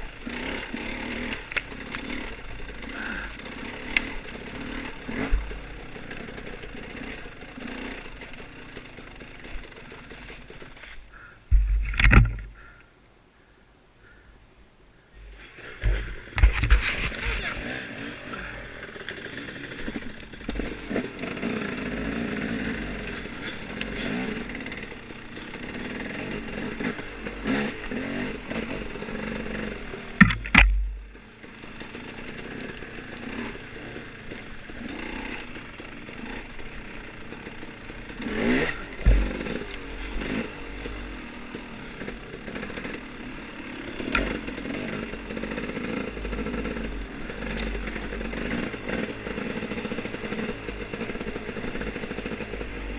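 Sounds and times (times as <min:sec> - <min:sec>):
dirt bike engine revving: 0:00.0 - 0:12.8, 0:15.3 - 0:52.9
bike clattering over rough ground: 0:11.5 - 0:12.6, 0:29.4 - 0:41.6.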